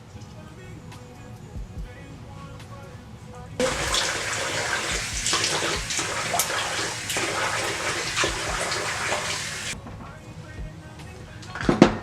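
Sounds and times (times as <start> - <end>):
tap water running into sink: 3.6 - 9.8.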